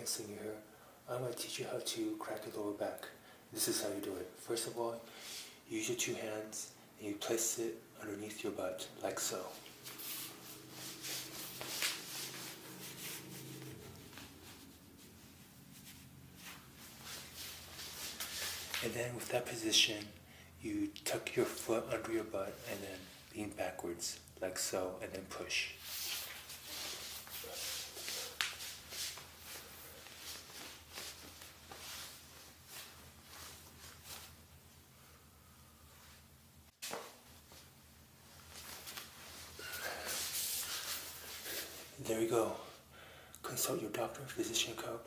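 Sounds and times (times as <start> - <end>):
low steady hum: 6.0 - 25.5
clothing rustling: 9.0 - 19.2, 25.4 - 42.0.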